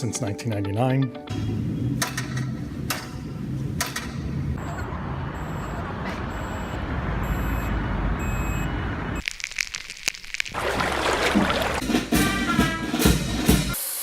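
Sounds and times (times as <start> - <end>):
wash of noise: 10.5 - 12.0.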